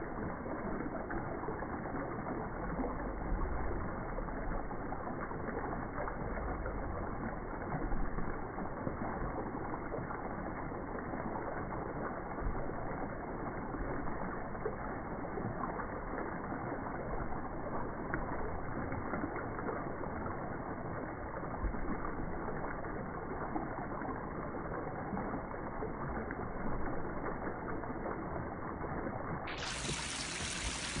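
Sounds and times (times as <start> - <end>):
waterfall rushing: 29.5 - 31.0.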